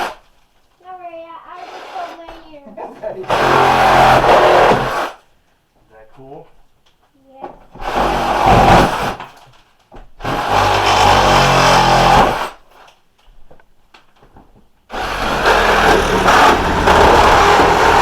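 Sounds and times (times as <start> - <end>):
power tool cutting wood: 3.3 - 5.2, 10.2 - 12.6, 14.9 - 18.0.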